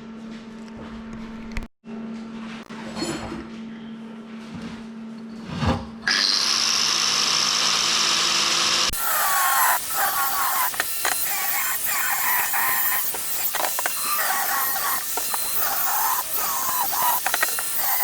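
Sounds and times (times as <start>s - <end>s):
power tool high-pitched whir: 6.1s - 18.0s.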